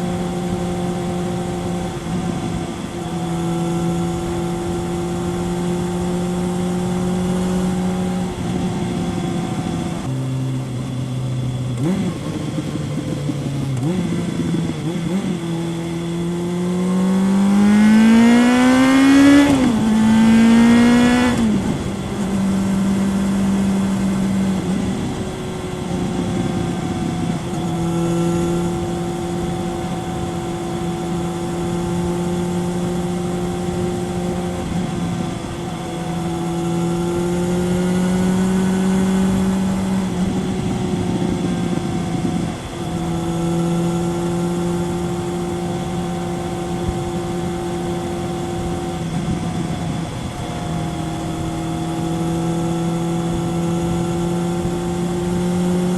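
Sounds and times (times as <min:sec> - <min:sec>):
motorcycle engine while riding: 0:00.0 - 0:55.9
motorcycle throttle blips: 0:00.0 - 0:55.9
motorcycle gear change: 0:17.7 - 0:55.9.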